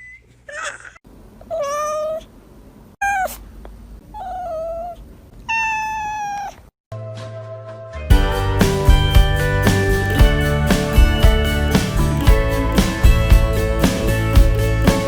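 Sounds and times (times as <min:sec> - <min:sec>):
cat meowing: 0:01.5 - 0:02.3, 0:03.0 - 0:03.4, 0:04.1 - 0:06.7.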